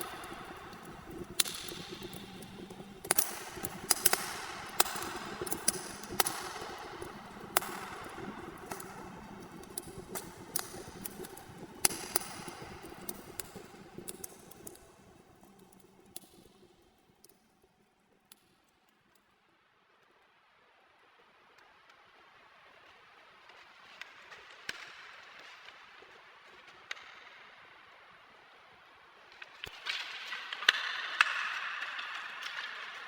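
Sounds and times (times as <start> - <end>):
wood fire crackling and popping: 0.0 - 17.4.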